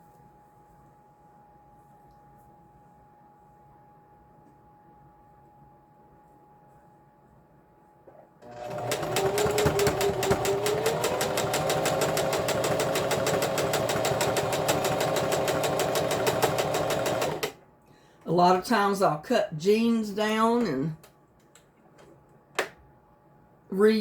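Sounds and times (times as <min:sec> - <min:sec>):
sewing machine stitching: 0:08.4 - 0:17.6.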